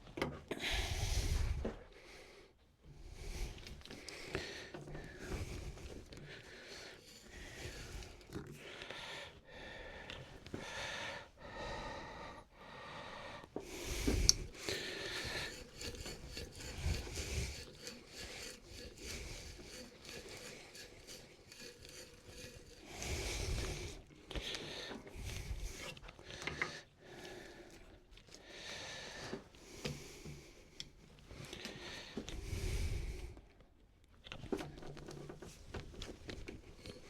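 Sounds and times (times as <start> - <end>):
hand tool scraping wood: 2.9 - 9.4, 13.6 - 27.6.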